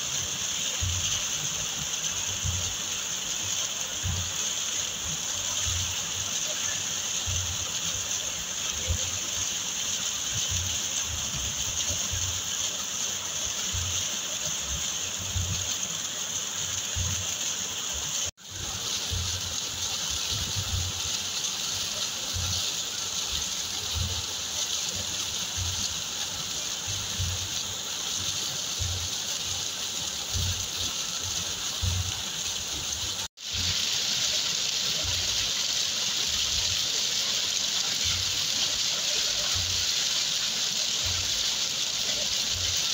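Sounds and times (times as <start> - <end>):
waterfall splashing: 0.0 - 42.9.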